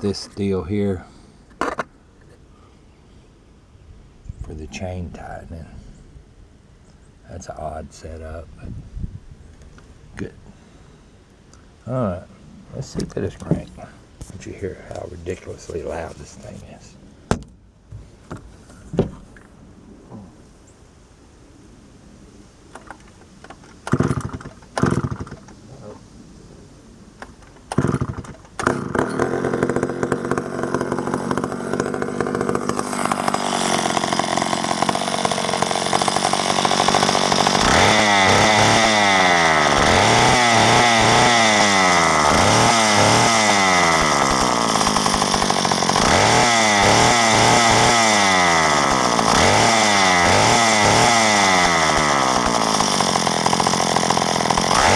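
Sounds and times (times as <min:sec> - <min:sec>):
chainsaw engine starting and revving: 0:23.8 - 0:25.6, 0:27.3 - 0:54.9.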